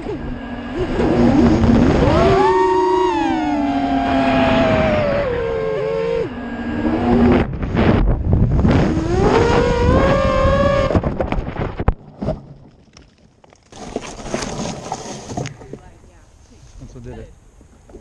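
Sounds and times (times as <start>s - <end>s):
drone motors whining: 0.0s - 11.0s.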